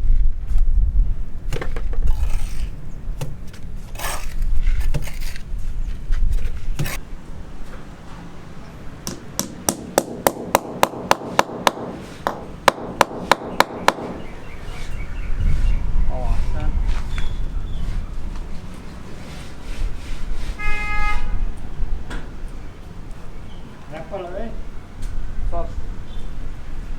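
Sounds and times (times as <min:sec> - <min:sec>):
scraping: 0:01.6 - 0:07.0
fast hammer strikes: 0:09.0 - 0:14.2.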